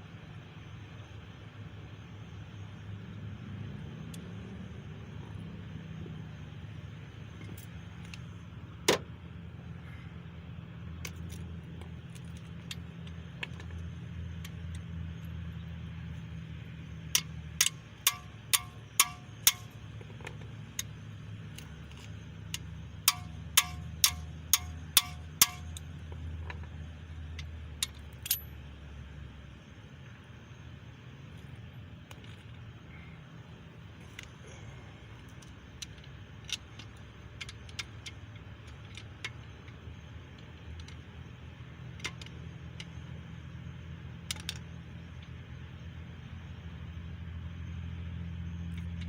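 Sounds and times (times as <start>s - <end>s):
steady low hum: 0.0s - 49.0s
hammer striking metal: 17.2s - 19.8s, 23.1s - 25.8s.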